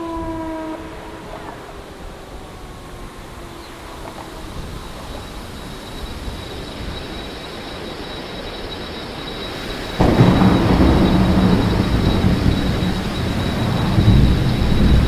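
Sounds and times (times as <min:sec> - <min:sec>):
thunder rumbling: 0:00.0 - 0:15.0
loud thunder crash: 0:10.0 - 0:15.0.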